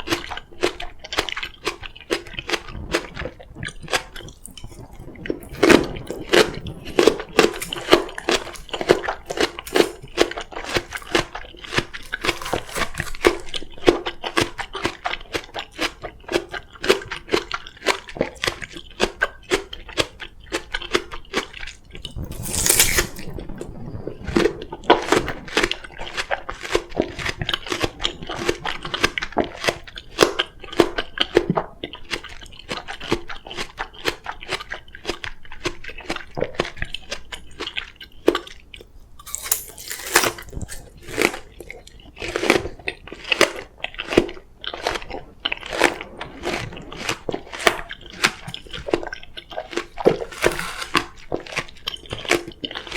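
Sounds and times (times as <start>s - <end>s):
crunchy chewing of melon: 0.0s - 52.9s.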